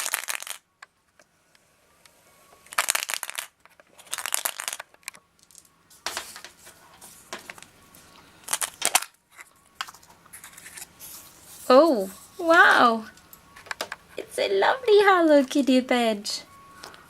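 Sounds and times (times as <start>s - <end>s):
toy egg wrapper crinkling: 0.0s - 0.6s, 2.7s - 5.6s, 8.4s - 10.9s.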